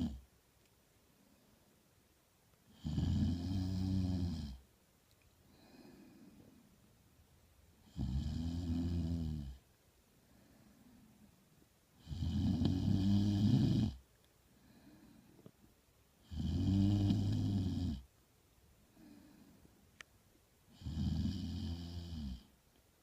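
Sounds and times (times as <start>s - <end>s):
long low snores: 0.0s - 0.2s, 2.7s - 4.6s, 7.8s - 9.6s, 12.0s - 14.0s, 16.2s - 18.1s, 20.7s - 22.5s
faint breaths: 1.0s - 2.0s, 4.5s - 7.1s, 9.5s - 12.4s, 13.2s - 18.1s, 18.7s - 22.6s.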